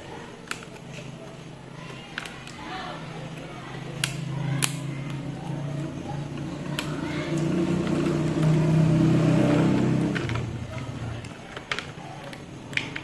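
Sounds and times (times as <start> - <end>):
sharp clicks: 4.0 - 5.2.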